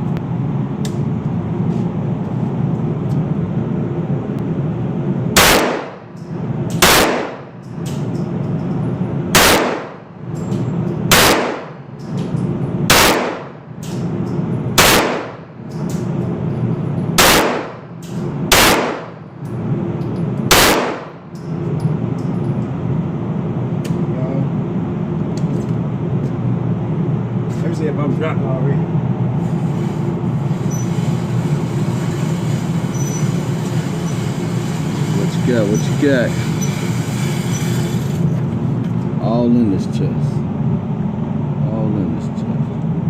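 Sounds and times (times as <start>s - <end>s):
steady low rumble: 0.0s - 43.0s
single gunshots: 5.4s - 6.0s, 6.8s - 7.5s, 9.3s - 10.0s, 11.1s - 11.8s, 12.9s - 13.6s, 14.8s - 15.4s, 17.2s - 17.8s, 18.5s - 19.2s, 20.5s - 21.2s.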